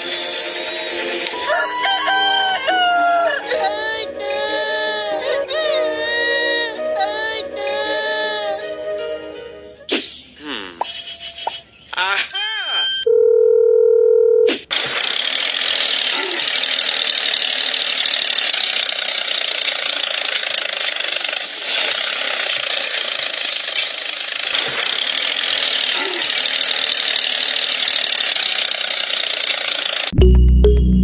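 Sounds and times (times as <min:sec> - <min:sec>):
rasping mechanical noise: 0:14.7 - 0:30.2
short electronic beep: 0:30.2 - 0:31.0.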